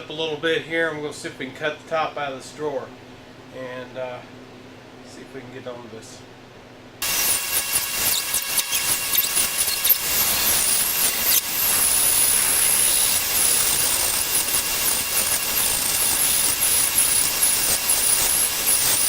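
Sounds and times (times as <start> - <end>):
bandsaw blade squealing: 7.0 - 19.0
bandsaw cutting wood: 7.0 - 19.0.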